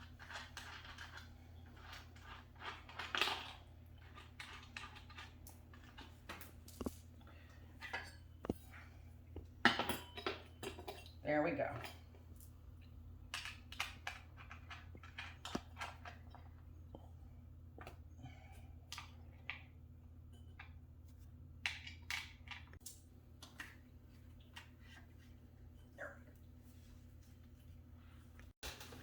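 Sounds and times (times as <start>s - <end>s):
steady low hum: 0.2s - 28.6s
clicks and knocks of bike parts: 28.6s - 29.0s.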